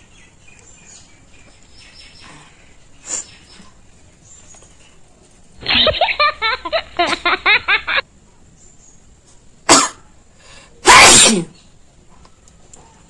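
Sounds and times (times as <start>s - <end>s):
person sneezing loudly: 9.7s - 10.1s, 10.8s - 11.6s.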